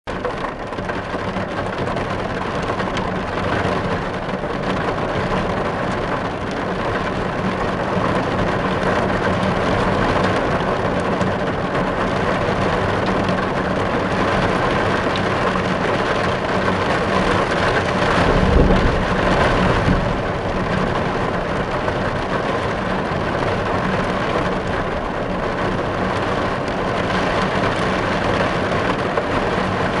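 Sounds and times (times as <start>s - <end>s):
rain on a roof: 0.0s - 30.0s
low rumble: 17.4s - 27.1s.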